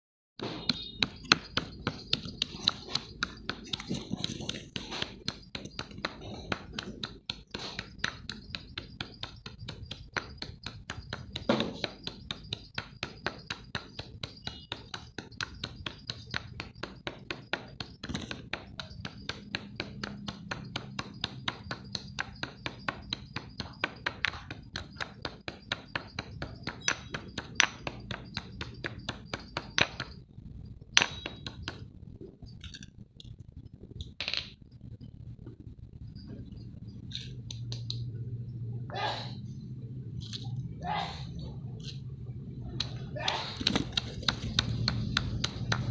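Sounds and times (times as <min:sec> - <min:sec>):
sharp knocks on hard object: 0:00.4 - 0:30.2, 0:43.3 - 0:45.9
clinks: 0:00.4 - 0:38.8, 0:42.8 - 0:45.9.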